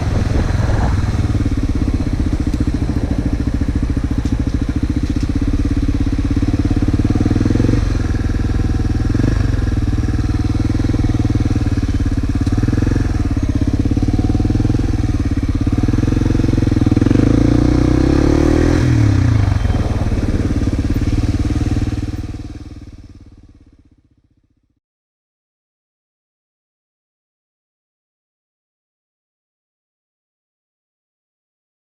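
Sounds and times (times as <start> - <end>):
motorcycle engine running and revving: 0.0 - 24.8.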